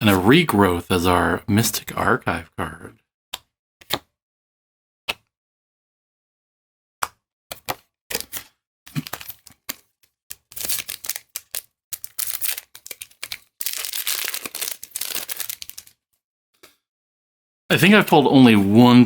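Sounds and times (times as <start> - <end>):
foil wrapper crinkling and tearing: 8.1 - 16.0.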